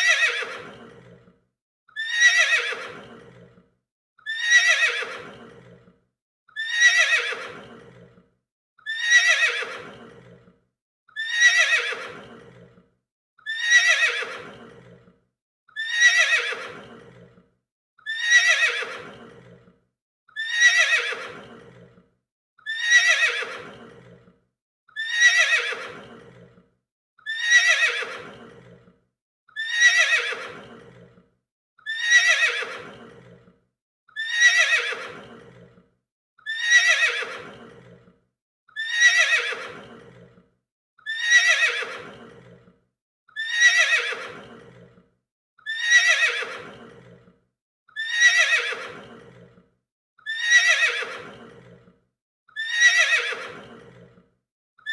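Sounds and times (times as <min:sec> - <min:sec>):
horse neighing: 0:02.0 - 0:03.5, 0:04.3 - 0:05.9, 0:06.6 - 0:08.1, 0:08.9 - 0:10.5, 0:11.2 - 0:12.7, 0:13.5 - 0:15.1, 0:15.8 - 0:17.3, 0:18.1 - 0:19.7, 0:20.4 - 0:21.9, 0:22.7 - 0:24.2, 0:25.0 - 0:26.5, 0:27.3 - 0:28.8, 0:29.6 - 0:31.1, 0:31.9 - 0:33.4, 0:34.2 - 0:35.7, 0:36.5 - 0:38.0, 0:38.8 - 0:40.3, 0:41.1 - 0:42.6, 0:43.4 - 0:44.8, 0:45.7 - 0:47.2, 0:48.0 - 0:49.4, 0:50.4 - 0:51.8, 0:52.6 - 0:54.0.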